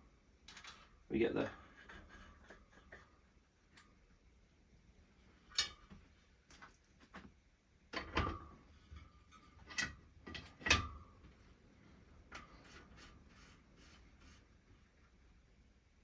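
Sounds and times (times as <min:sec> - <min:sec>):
metal clunks and clicks: 0:07.9 - 0:11.2.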